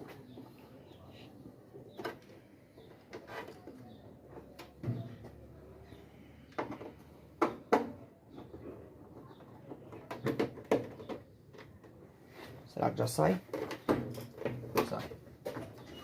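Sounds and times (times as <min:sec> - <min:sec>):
tools and plastic parts knocking: 0:06.4 - 0:12.0, 0:13.5 - 0:16.0.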